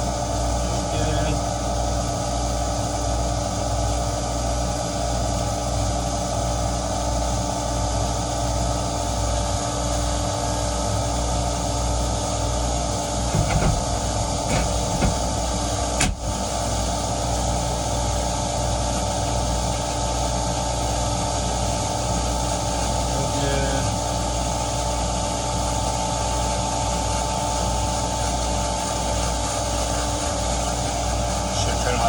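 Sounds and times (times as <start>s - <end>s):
well pump humming: 0.0s - 32.0s
sharp knock: 13.3s - 13.8s, 16.0s - 16.2s.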